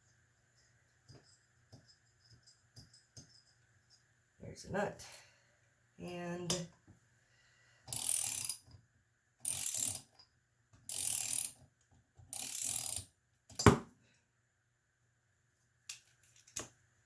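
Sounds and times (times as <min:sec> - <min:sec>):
ratchet wrench clicking: 0:07.9 - 0:08.6, 0:09.4 - 0:10.1, 0:10.9 - 0:11.6, 0:12.3 - 0:13.1.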